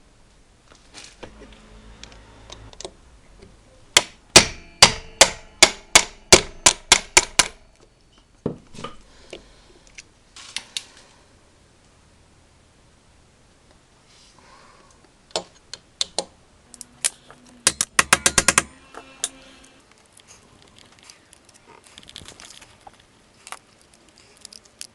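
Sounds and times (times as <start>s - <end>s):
sharp metallic knocks: 4.0s - 7.8s, 17.7s - 18.9s.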